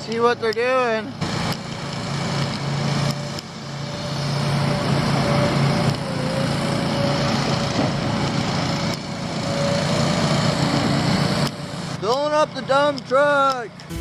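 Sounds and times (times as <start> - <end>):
diesel machinery engine hum: 1.1 - 12.0.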